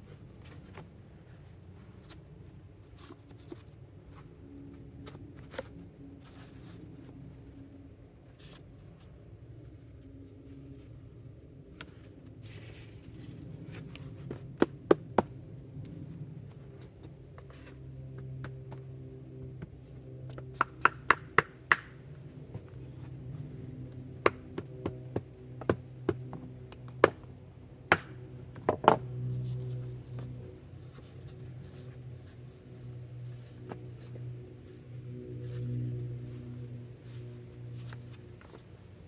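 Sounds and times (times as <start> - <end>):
low steady hum: 0.0 - 39.0.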